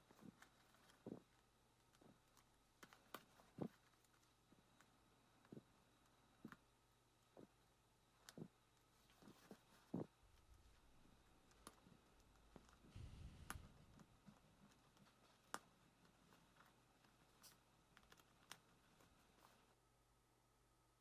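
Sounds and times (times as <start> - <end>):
handling rumble: 12.6 - 14.3.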